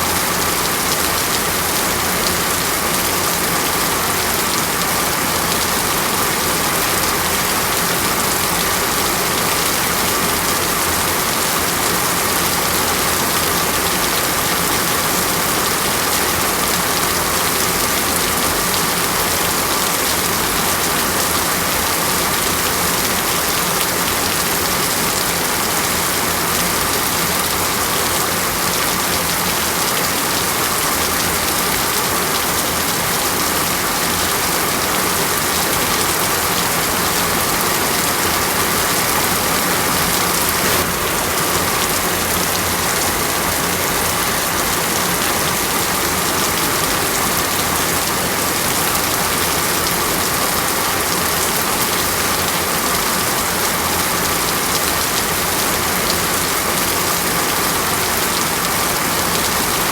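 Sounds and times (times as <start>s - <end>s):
heavy rain pattering on foliage: 0.0s - 59.9s.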